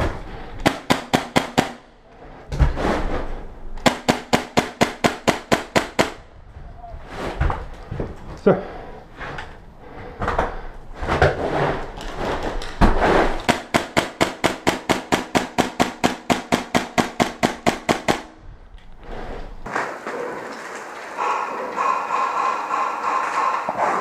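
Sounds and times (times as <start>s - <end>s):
airsoft rifle rapid shots: 0.6s - 1.8s, 3.8s - 6.2s, 13.5s - 18.3s.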